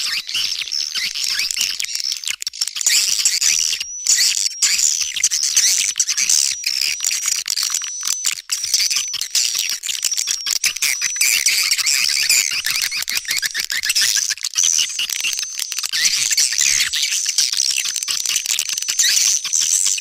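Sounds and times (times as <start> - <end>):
bird chirps and twitters: 0.0 - 7.0, 8.8 - 17.6.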